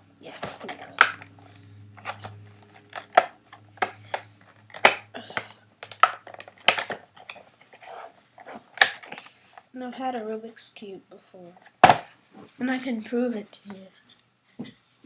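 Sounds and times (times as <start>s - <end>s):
plastic packaging clicking: 2.2s - 5.1s, 5.8s - 7.4s, 8.8s - 9.3s.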